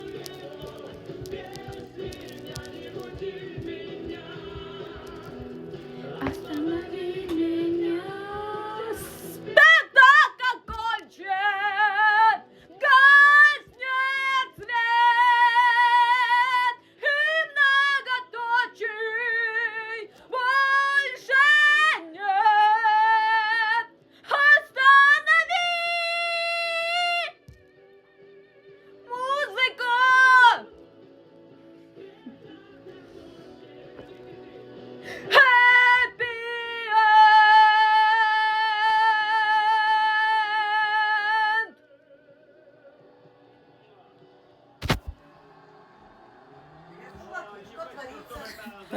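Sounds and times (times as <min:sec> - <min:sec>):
woman singing: 0:00.0 - 0:27.4, 0:29.0 - 0:30.7, 0:35.1 - 0:41.8
singer breathing: 0:05.7 - 0:06.2, 0:12.4 - 0:12.8, 0:16.8 - 0:17.0.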